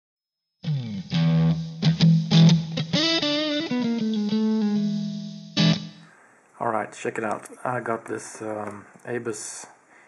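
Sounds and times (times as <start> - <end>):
plucked guitar music: 0.6 - 6.0.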